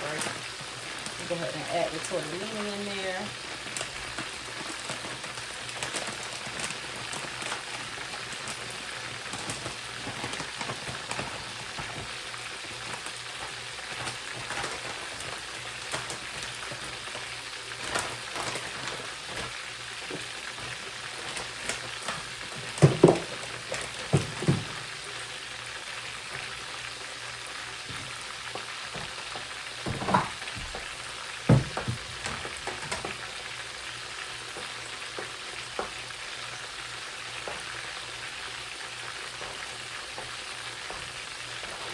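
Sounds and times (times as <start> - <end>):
food sizzling in oil: 0.0 - 41.9
knocks: 31.5 - 32.5.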